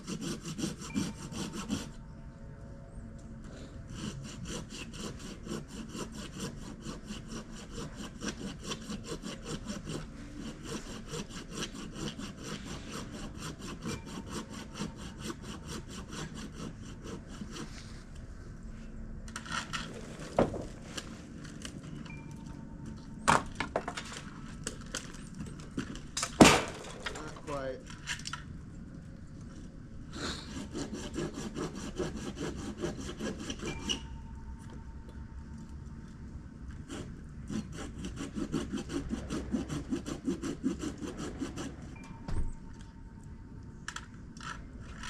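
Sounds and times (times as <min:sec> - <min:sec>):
hand saw cutting wood: 0:00.0 - 0:02.0, 0:03.9 - 0:17.9, 0:30.2 - 0:34.1, 0:36.8 - 0:42.2.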